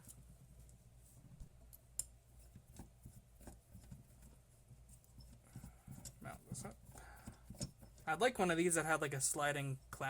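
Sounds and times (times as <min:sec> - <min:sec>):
small parts clicking and tapping: 0:01.7 - 0:08.3.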